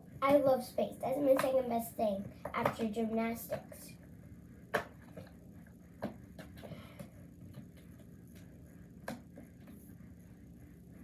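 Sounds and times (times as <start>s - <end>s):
low steady hum: 0.0s - 11.0s
fidget toy clicks and taps: 1.2s - 1.7s.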